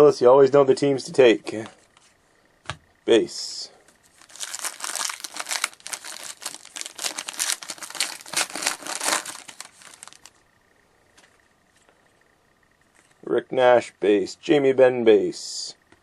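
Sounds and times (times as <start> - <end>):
foil wrapper crinkling: 4.1 - 10.4.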